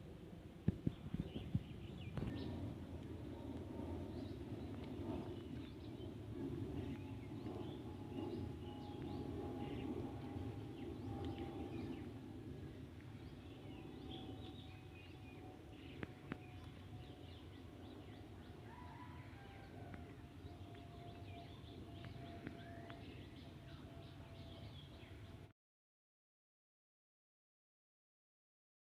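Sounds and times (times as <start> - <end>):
low outdoor rumble: 0.0 - 25.5
birds chirping: 4.0 - 25.4.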